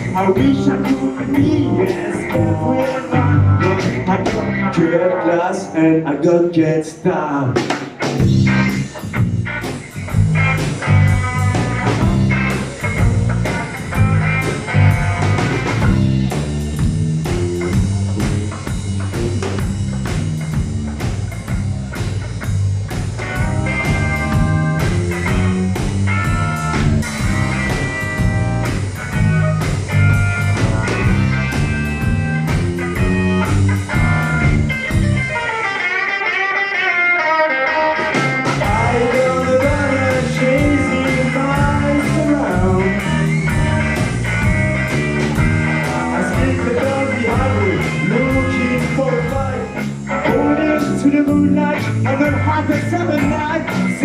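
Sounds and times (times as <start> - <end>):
bass guitar: 0.0 - 54.0
drums: 0.0 - 54.0
electric guitar solo: 23.2 - 39.6.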